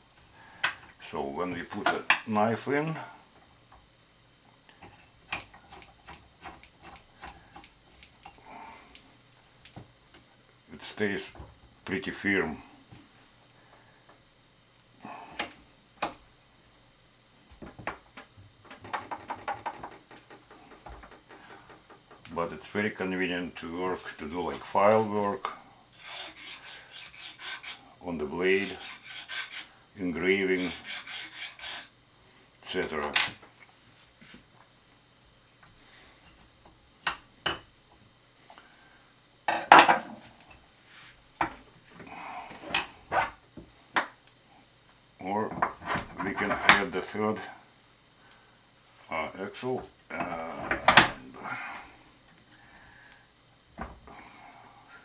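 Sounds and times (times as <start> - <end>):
vise clicks and knocks: 18.6 - 22.3
metal scraping: 26.0 - 27.8, 30.5 - 31.9.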